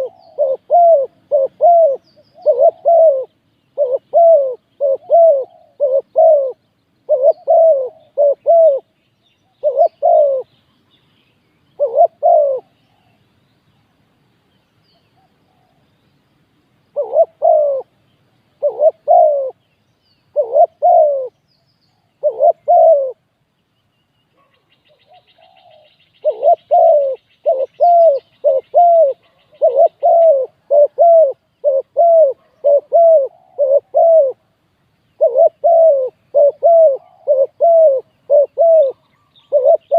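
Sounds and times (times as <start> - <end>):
dove cooing: 0.0 - 9.0, 9.6 - 10.5, 11.8 - 13.2, 16.9 - 18.0, 18.6 - 19.6, 20.3 - 21.4, 22.1 - 23.3, 24.4 - 34.5, 35.1 - 39.9.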